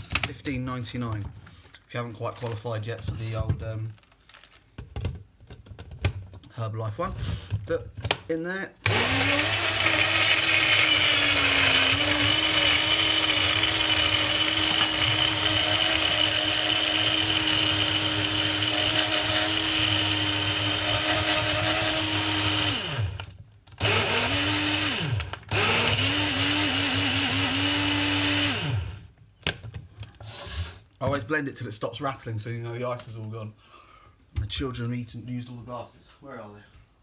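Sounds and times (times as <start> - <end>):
blender crushing ice: 8.8 - 14.6, 15.3 - 29.0.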